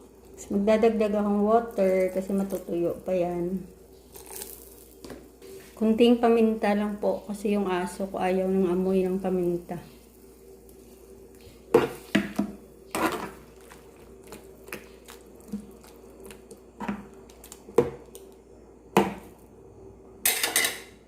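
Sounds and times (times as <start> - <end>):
food simmering: 0.0 - 5.9, 9.4 - 19.7
faint steady hum: 0.0 - 21.0.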